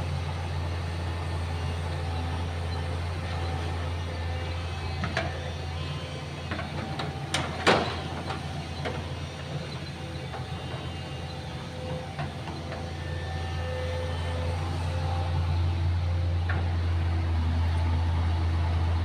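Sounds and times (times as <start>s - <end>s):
excavator diesel engine running: 0.0s - 19.0s
sharp knocks and clanks: 6.5s - 9.2s.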